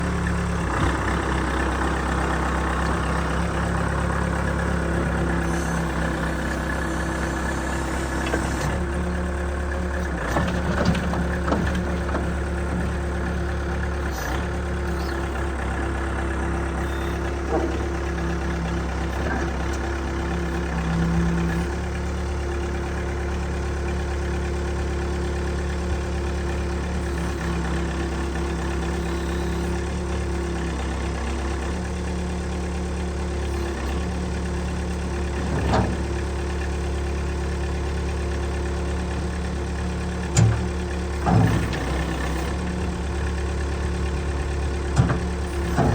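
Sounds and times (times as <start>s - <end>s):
diesel engine idling: 0.0s - 45.9s
short knocks or clunks: 40.3s - 42.0s, 44.9s - 45.9s.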